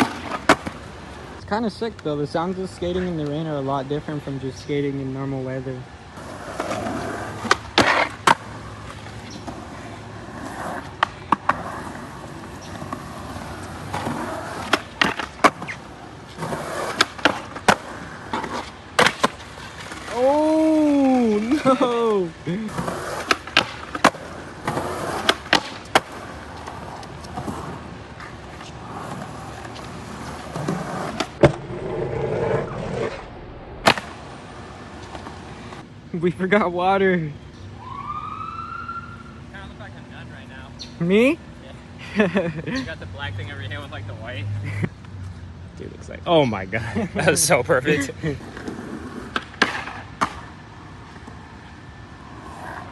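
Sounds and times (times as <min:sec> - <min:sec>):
skateboard wheels rolling on concrete: 0:00.0 - 0:37.3, 0:38.1 - 0:52.9
skateboard wooden clacks: 0:22.8 - 0:32.0.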